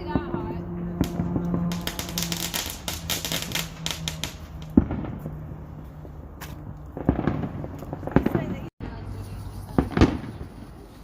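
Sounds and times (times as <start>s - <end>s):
firework bangs: 0.0s - 11.0s
fireworks crackling pops: 1.0s - 5.4s, 9.6s - 11.0s.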